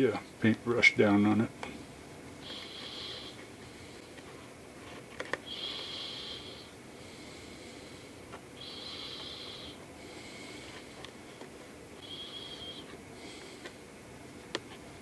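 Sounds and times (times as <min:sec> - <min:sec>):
man breathing through nose: 0:02.4 - 0:04.2, 0:05.5 - 0:11.1, 0:12.0 - 0:13.9.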